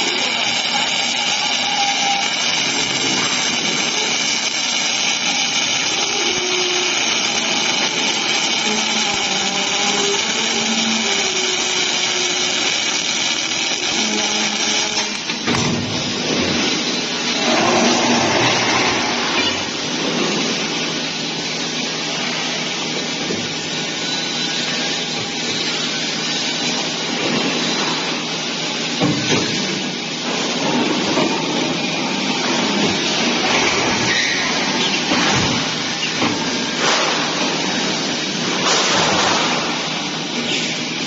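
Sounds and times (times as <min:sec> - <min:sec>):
welding machine hissing: 0:00.0 - 0:41.0.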